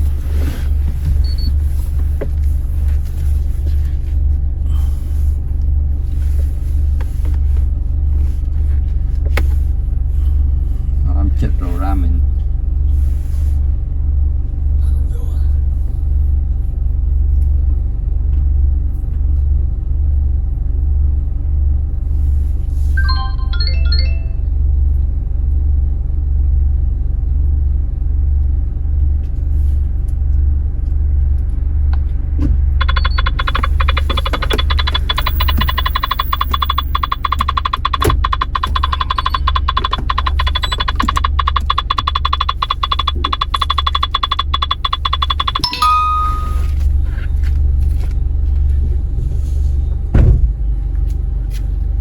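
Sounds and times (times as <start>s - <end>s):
car engine idling: 0.0s - 18.0s, 30.7s - 49.7s
electronic beeps: 1.2s - 1.6s, 23.0s - 24.4s, 32.8s - 46.8s
sustained electronic tone: 23.0s - 24.5s, 32.8s - 47.0s
rapid clicking: 32.7s - 45.7s.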